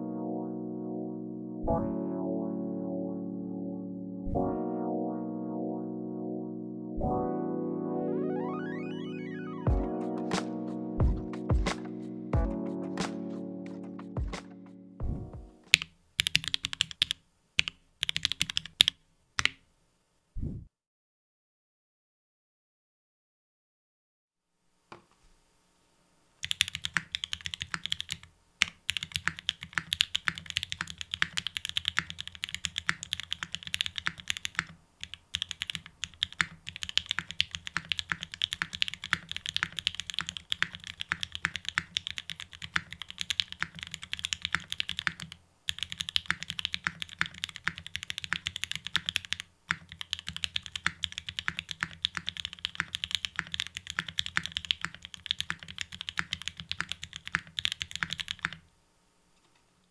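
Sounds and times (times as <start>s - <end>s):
mechanical keyboard typing: 15.7s - 19.6s, 26.4s - 58.7s.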